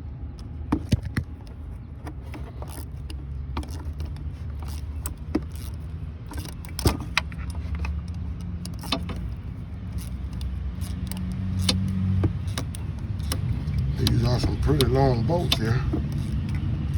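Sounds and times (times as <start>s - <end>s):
steady low drone: 0.0s - 6.7s.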